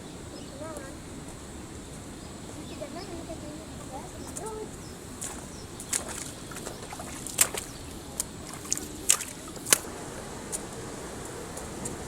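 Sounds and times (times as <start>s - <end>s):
rushing river water: 0.0s - 12.0s
short sharp splashes: 5.1s - 12.0s.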